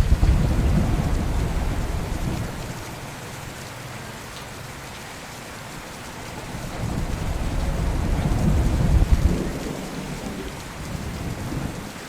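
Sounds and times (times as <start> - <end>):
thunder rumbling: 0.0 - 2.9, 6.5 - 12.0
steady rain: 0.0 - 12.0.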